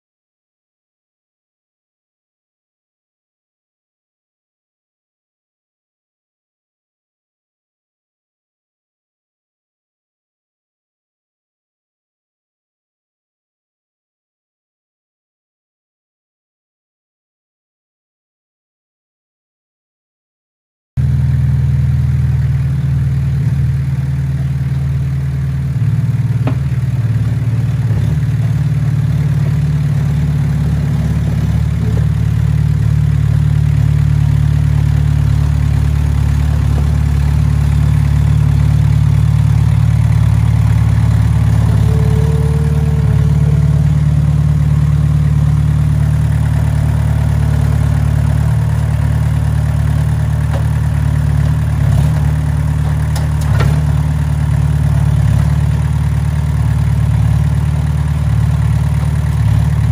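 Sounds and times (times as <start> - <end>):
engine running steadily: 21.0 - 59.9.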